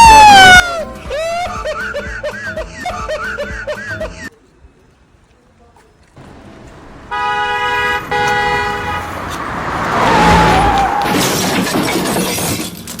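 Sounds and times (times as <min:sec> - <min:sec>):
car horn blasts: 0:07.1 - 0:11.5
loud rush of noise: 0:08.6 - 0:12.4.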